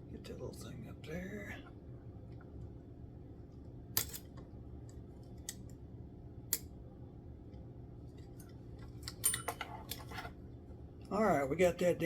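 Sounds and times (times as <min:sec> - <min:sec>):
steady low hum: 0:00.0 - 0:12.0
sharp clicks of small parts: 0:04.0 - 0:04.3.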